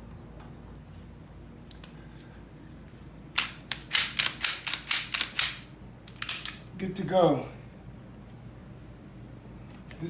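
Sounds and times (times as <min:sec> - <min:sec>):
sharp clicks of pistol parts: 0:03.4 - 0:06.7.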